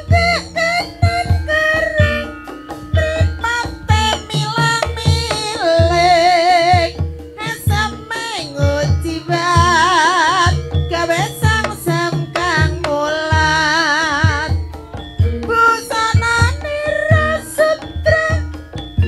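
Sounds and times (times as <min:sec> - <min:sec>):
high voice singing with vibrato: 0:00.0 - 0:14.9, 0:15.5 - 0:18.6
hand drums: 0:00.0 - 0:19.0
melodic ensemble: 0:09.2 - 0:16.1.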